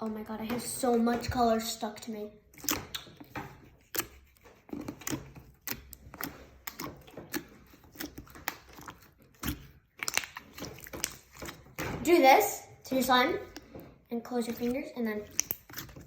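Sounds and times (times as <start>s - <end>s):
slime squeezed popping: 5.0s - 11.8s, 14.5s - 16.0s.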